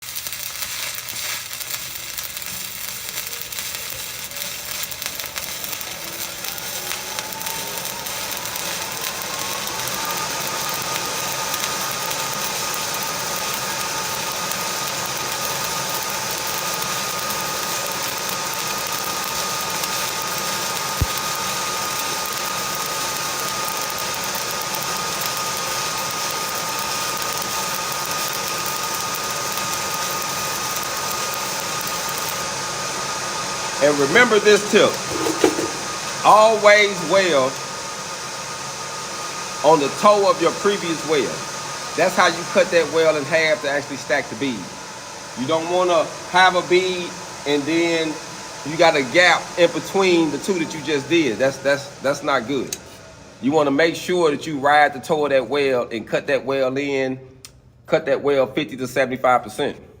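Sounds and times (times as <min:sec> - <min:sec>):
welding arc crackling: 0:00.0 - 0:44.7
welding machine whine: 0:00.0 - 0:55.8.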